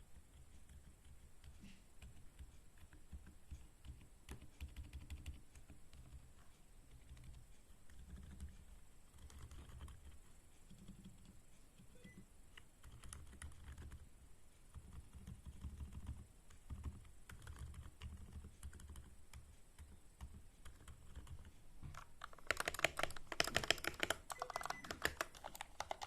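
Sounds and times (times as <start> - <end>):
mechanical keyboard keys clacking: 9.2 - 11.4, 12.8 - 14.0, 14.8 - 19.4, 20.2 - 26.0.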